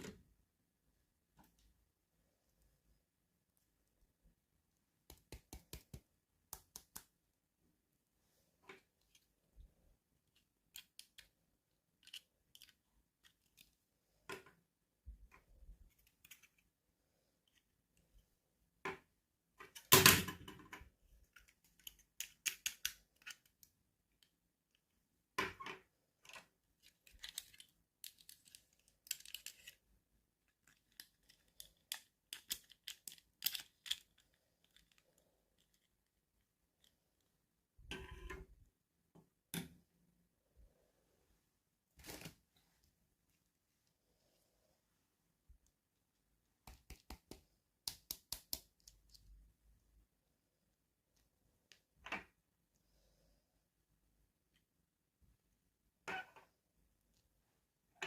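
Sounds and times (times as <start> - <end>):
small clicks and taps: 46.6 - 49.4.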